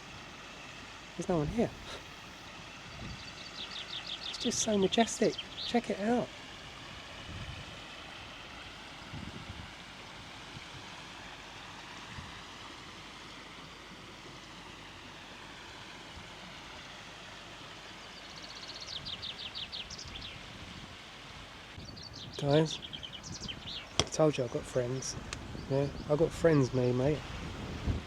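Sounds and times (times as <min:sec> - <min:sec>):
waterfall and stream rushing: 0:00.0 - 0:28.0
small bird singing: 0:01.2 - 0:06.3, 0:17.9 - 0:20.5, 0:21.8 - 0:26.8.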